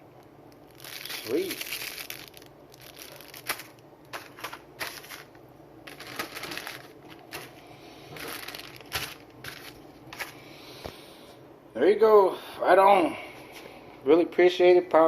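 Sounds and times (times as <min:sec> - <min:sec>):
packaging crinkling and rustling: 0:00.5 - 0:10.4.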